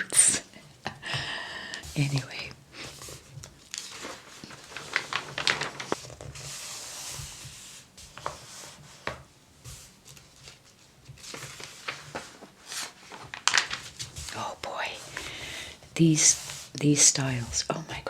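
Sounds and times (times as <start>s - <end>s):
paper rustling: 1.8s - 17.7s
page turning swish: 3.0s - 8.8s
crisp paper ticks: 3.3s - 6.4s, 13.1s - 15.3s.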